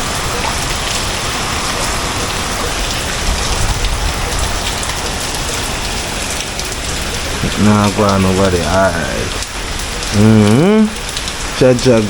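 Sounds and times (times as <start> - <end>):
heavy rain pouring: 0.0 - 12.0
strong wind rumbling: 1.0 - 8.2.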